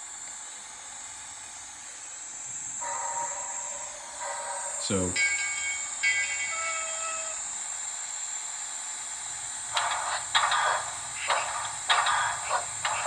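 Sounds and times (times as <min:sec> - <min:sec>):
multi-note steam whistle: 0:02.8 - 0:04.9, 0:05.5 - 0:07.8.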